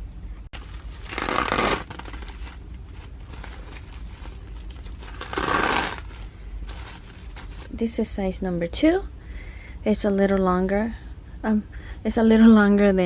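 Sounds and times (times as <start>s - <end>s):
plastic wrapping rustling: 0.5s - 8.0s.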